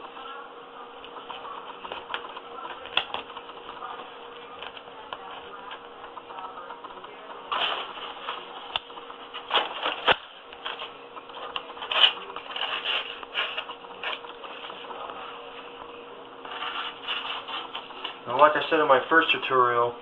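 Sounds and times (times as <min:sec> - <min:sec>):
carpet scraping and rustling: 0:16.4 - 0:18.2.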